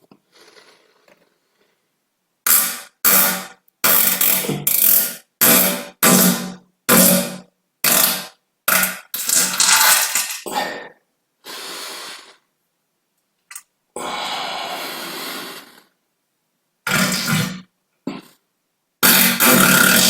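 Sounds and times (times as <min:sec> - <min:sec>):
farts: 0:07.9 - 0:09.6, 0:16.8 - 0:18.4, 0:19.0 - 0:20.0.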